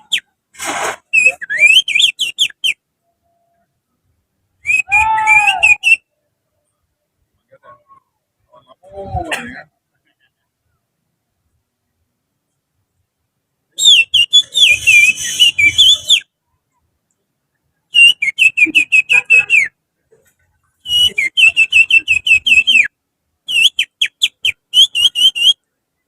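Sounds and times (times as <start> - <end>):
finger whistling birdsong: 1.1 - 2.8, 13.8 - 16.3, 23.5 - 25.6.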